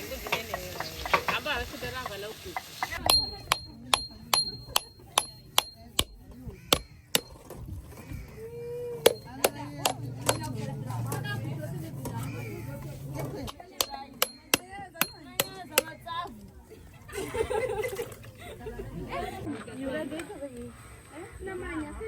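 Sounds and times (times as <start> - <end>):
food sizzling in pan: 0.0 - 3.0
sharp metallic knocks: 2.8 - 8.1, 9.0 - 11.4, 13.3 - 16.0.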